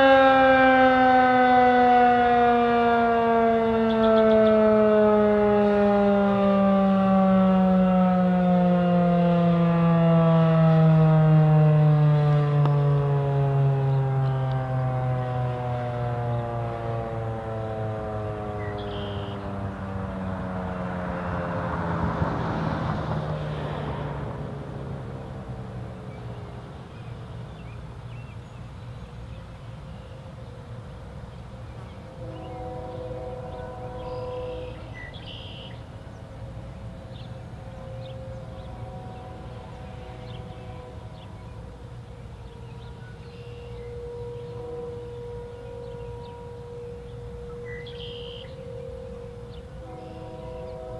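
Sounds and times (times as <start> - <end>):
warning siren winding down: 0.0 - 28.1, 31.5 - 50.9
distant traffic hum: 0.0 - 50.9
bird chirps: 18.6 - 19.5, 34.0 - 35.8, 47.5 - 48.6.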